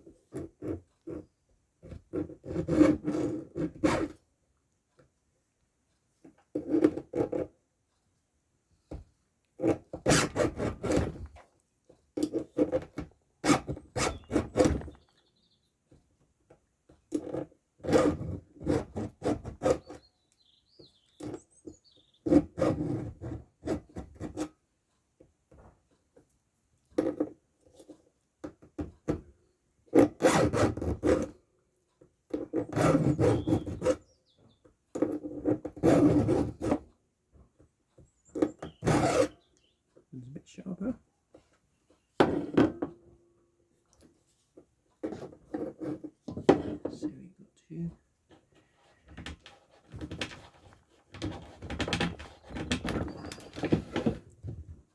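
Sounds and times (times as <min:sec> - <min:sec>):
file rasping on chainsaw chain: 0:00.0 - 0:04.2, 0:29.9 - 0:31.4.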